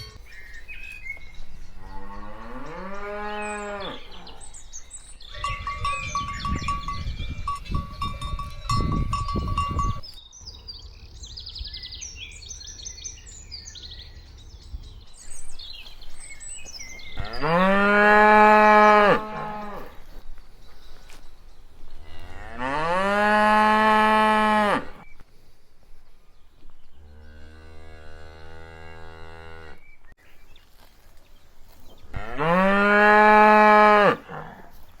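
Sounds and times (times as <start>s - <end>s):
cattle mooing: 1.8s - 4.5s, 17.2s - 20.0s, 22.0s - 25.0s, 32.2s - 34.7s.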